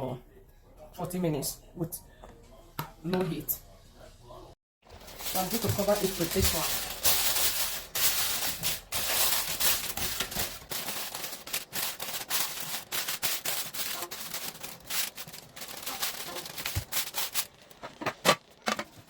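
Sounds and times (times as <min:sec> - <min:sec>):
crackling and rustling: 0:04.9 - 0:19.0.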